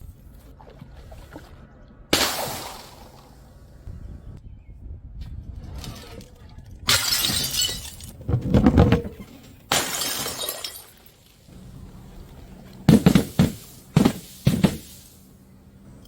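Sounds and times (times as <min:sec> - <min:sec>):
paint balloons bursting: 0:12.9 - 0:15.2.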